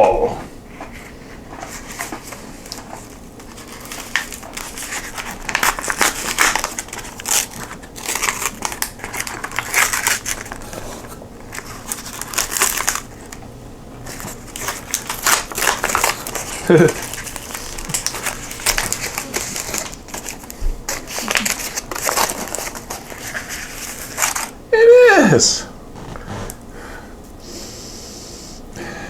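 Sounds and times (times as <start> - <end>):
plastic wrapper crinkling: 1.8 - 13.4, 14.0 - 24.6.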